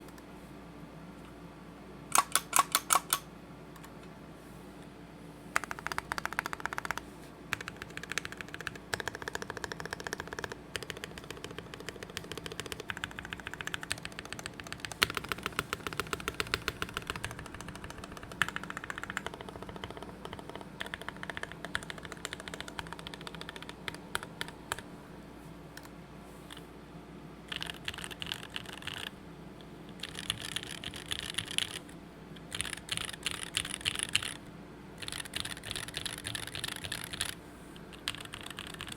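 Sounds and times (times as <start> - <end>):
mechanical keyboard typing: 2.1 - 3.2, 5.6 - 24.8, 27.5 - 29.1, 29.9 - 34.4, 35.0 - 38.9.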